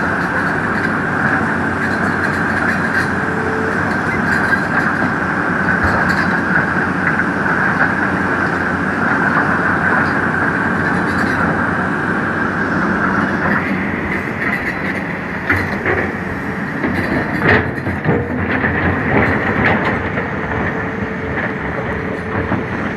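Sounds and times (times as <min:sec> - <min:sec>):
excavator diesel engine: 0:00.0 - 0:22.9
hydraulic whine: 0:00.0 - 0:22.9.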